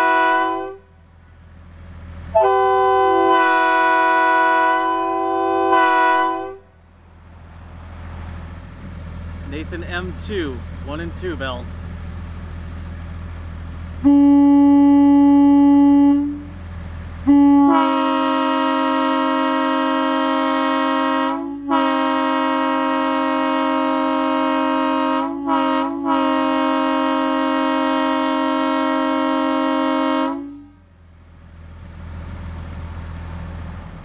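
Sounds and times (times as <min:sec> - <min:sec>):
locomotive air horn blasts: 0:00.0 - 0:01.0, 0:02.3 - 0:06.7, 0:14.0 - 0:16.6, 0:17.2 - 0:30.8.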